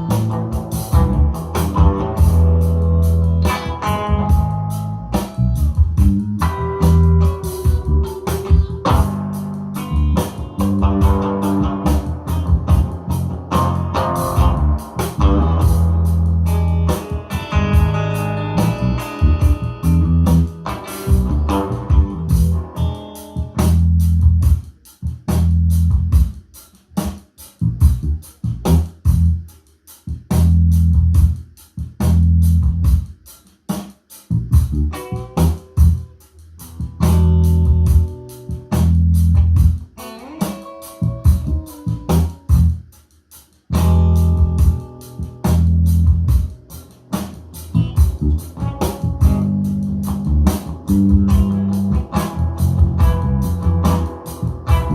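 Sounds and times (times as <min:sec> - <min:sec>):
bass line: 0:00.0 - 0:26.4, 0:27.6 - 0:29.5, 0:30.1 - 0:33.2, 0:34.3 - 0:40.0, 0:41.0 - 0:42.9, 0:43.7 - 0:54.9
band music through speaker: 0:00.0 - 0:54.9.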